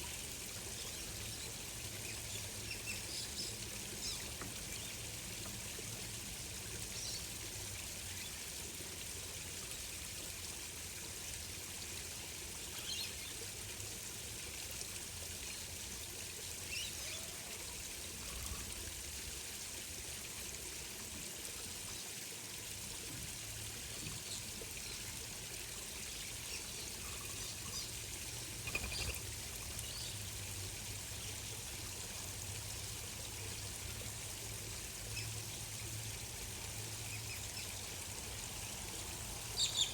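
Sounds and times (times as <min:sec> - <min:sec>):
water trickling: 0:00.0 - 0:39.9.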